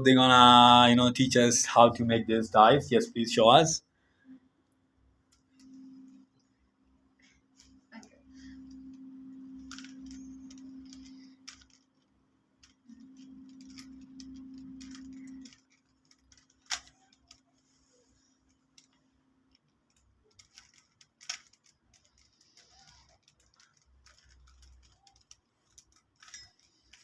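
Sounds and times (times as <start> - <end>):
low hum: 5.4 - 11.8, 12.6 - 16.2
rubik's cube clicking: 9.6 - 12.0, 12.6 - 17.4, 18.8 - 27.0.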